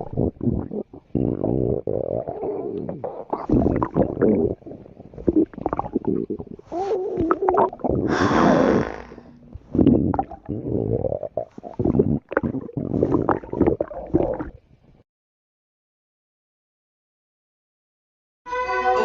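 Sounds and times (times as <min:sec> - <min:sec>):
stomach growling: 0:00.0 - 0:14.7.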